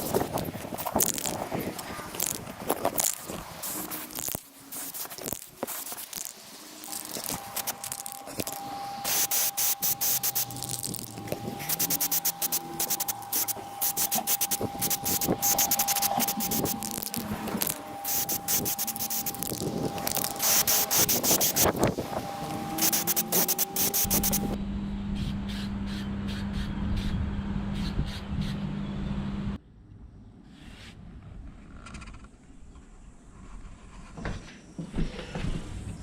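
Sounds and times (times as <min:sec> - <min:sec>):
spray-paint can spraying: 0:00.0 - 0:24.6.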